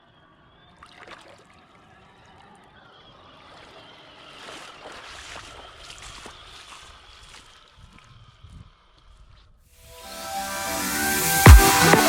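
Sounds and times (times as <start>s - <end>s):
stream water gurgling: 0.8s - 8.0s
small water splashes: 0.8s - 8.9s.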